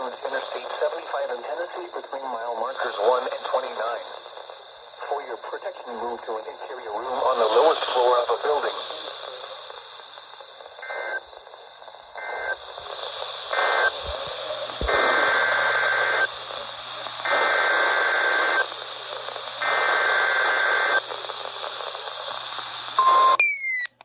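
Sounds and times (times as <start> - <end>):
radio static: 0.0 - 23.4.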